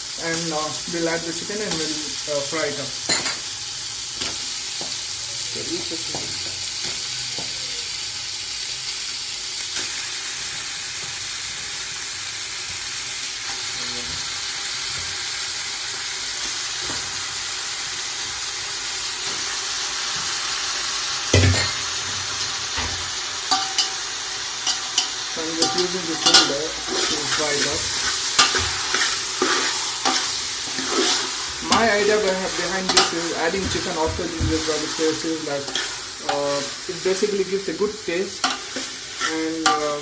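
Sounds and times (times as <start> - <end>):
chicken frying in hot oil: 0.0 - 40.0
knocks in a pan: 21.3 - 21.8.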